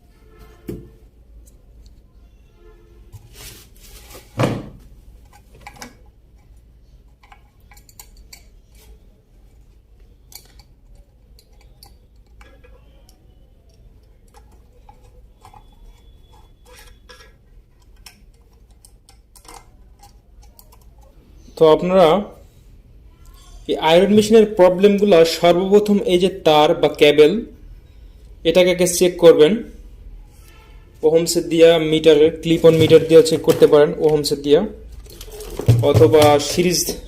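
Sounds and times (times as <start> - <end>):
metallic clicks and clinks: 7.1 - 8.8.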